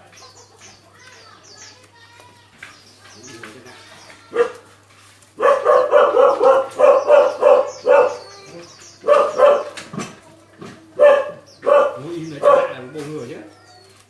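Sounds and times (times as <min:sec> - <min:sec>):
dog barking: 0:04.3 - 0:04.7, 0:05.4 - 0:08.3, 0:09.0 - 0:10.0, 0:11.0 - 0:12.9.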